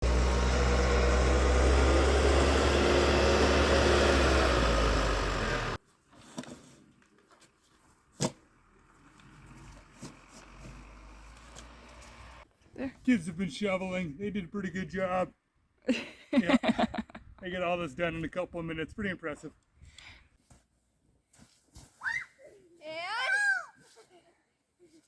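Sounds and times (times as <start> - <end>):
vehicle engine running: 0.0 - 5.8, 8.4 - 12.4.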